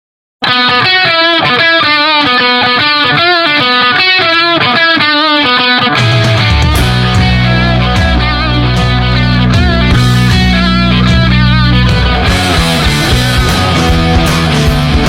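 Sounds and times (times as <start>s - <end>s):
distorted electric guitar: 0.4s - 15.0s
heavy bass and drums: 6.0s - 15.0s.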